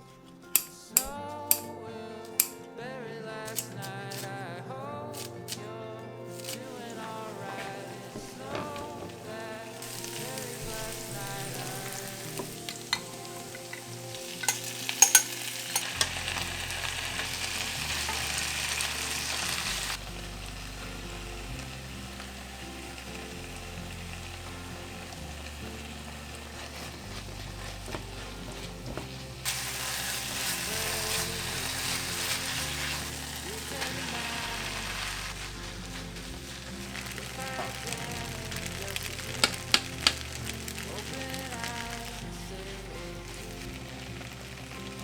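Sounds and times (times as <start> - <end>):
utensil clicking against pan: 0.5 - 1.7, 2.4 - 2.6, 3.5 - 4.3, 9.8 - 16.6, 38.6 - 40.8
food sizzling in a frying pan: 6.3 - 45.0.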